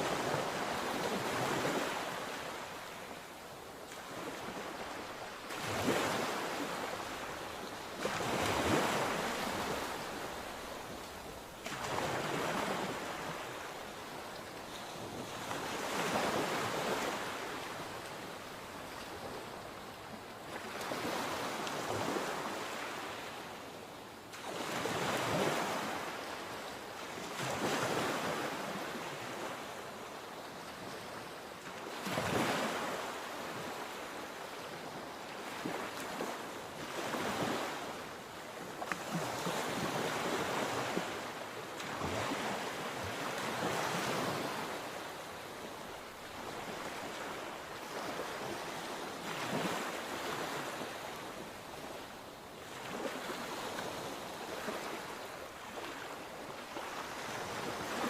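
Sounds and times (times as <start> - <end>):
sea waves breaking: 3.9 - 18.2, 38.6 - 58.0.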